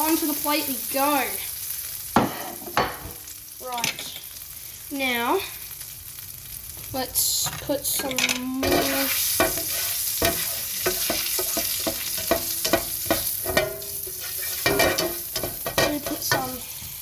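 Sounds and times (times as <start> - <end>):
fat crackling and popping: 0.0 - 17.0
fat sizzling in a frying pan: 0.0 - 17.0.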